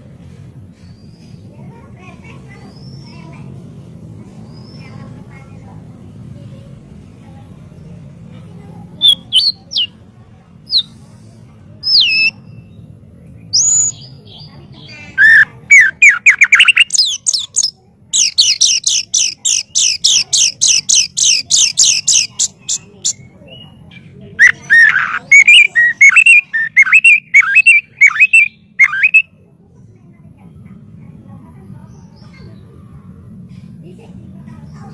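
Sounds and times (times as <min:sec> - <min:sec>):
bird whistling song: 0:09.0 - 0:10.0, 0:10.7 - 0:10.9, 0:11.8 - 0:12.8, 0:13.5 - 0:29.3.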